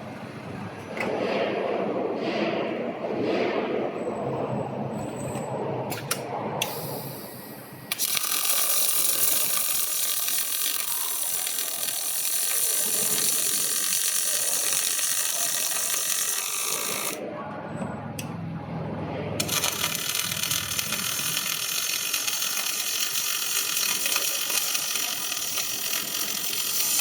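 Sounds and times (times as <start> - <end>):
welding arc crackling: 6.6 - 17.2, 19.4 - 27.0.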